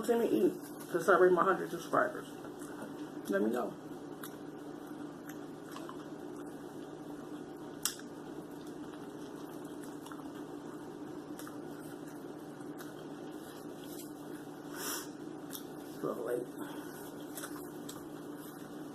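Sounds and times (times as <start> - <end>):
steady low hum: 0.0 - 18.9
person chewing food: 4.1 - 14.6, 15.4 - 15.9, 16.8 - 18.9
mouth and food clicks: 4.2 - 4.4.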